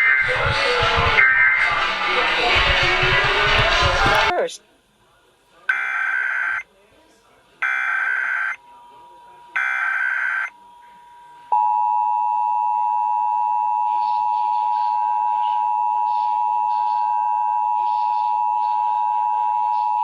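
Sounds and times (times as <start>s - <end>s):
two-tone alert tone: 0.0s - 2.0s.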